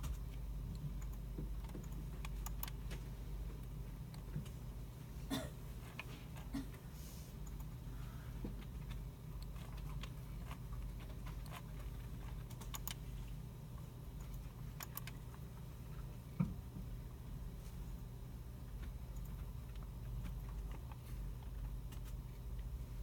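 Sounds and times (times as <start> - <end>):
computer keyboard keystrokes: 0.0 - 3.0, 8.6 - 13.0, 14.2 - 15.4
low hum of room equipment: 0.0 - 23.0.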